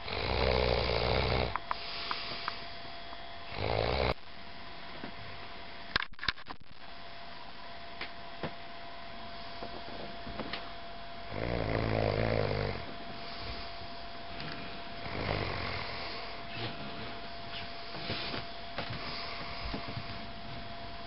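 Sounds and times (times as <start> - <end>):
person snoring: 0.0 - 2.5, 3.5 - 4.2, 11.3 - 13.6, 15.0 - 16.4
faint steady hum: 0.0 - 21.0.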